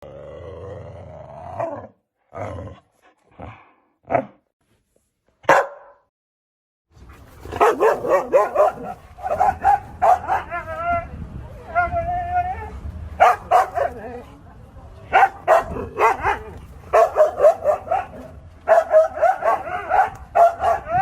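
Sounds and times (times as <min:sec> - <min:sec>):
dog barking and yipping: 0:05.4 - 0:06.0, 0:07.5 - 0:10.7, 0:13.2 - 0:14.1, 0:15.2 - 0:21.0.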